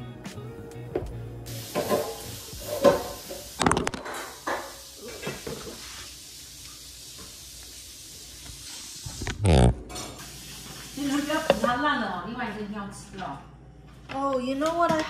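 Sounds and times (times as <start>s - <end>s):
dishes and utensils clinking: 1.7s - 5.8s.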